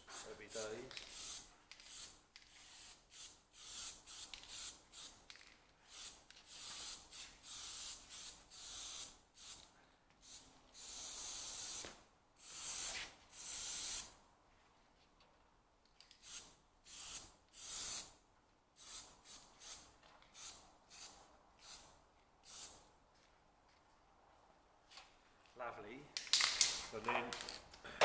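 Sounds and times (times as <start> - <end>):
aerosol can spraying: 0.1 - 5.2, 5.9 - 9.6, 10.2 - 11.8, 12.4 - 14.1.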